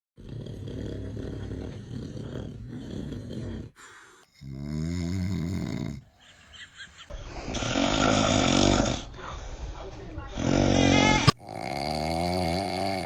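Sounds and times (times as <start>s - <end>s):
man snoring: 0.2s - 6.2s, 7.3s - 9.1s, 10.3s - 13.0s.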